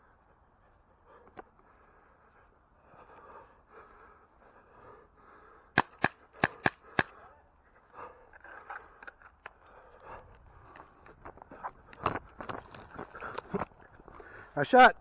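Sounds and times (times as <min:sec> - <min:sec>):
airsoft rifle shots: 0:05.8 - 0:07.2.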